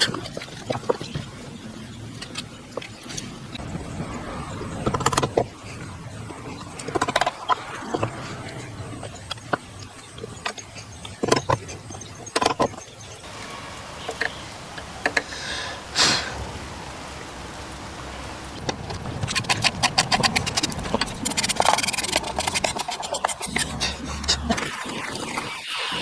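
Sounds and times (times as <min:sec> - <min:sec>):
short scraping rush: 0:13.2 - 0:25.4.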